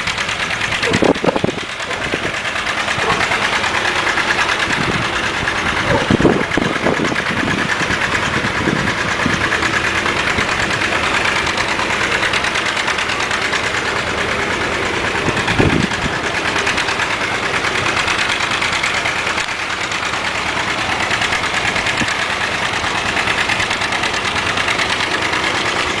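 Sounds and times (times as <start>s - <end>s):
tractor engine idling: 0.0s - 26.0s.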